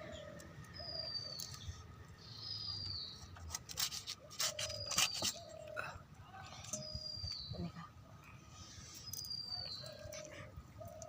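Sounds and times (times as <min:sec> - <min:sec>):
knife scraping fish: 0:03.3 - 0:05.5.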